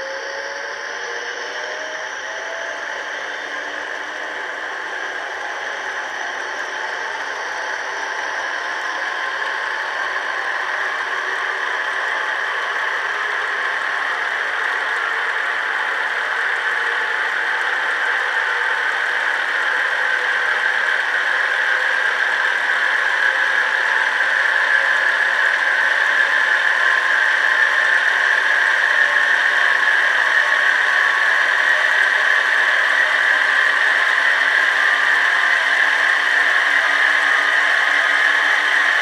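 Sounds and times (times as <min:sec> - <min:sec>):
electric train motors running: 0:21.7 - 0:39.0.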